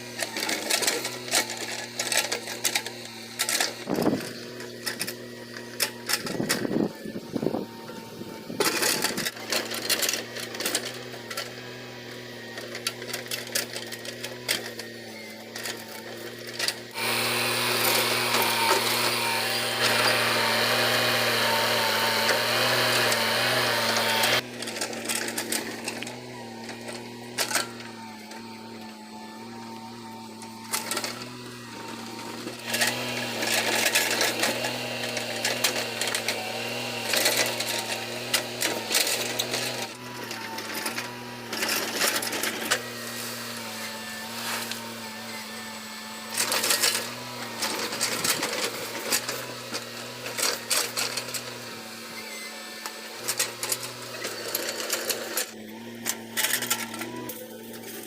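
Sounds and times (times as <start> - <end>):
excavator engine running: 0.0 - 51.6.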